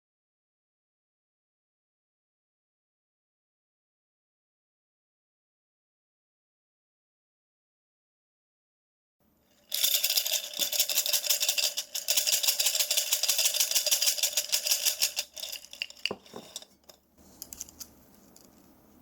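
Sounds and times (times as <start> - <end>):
small hard objects rattling: 9.6 - 17.0.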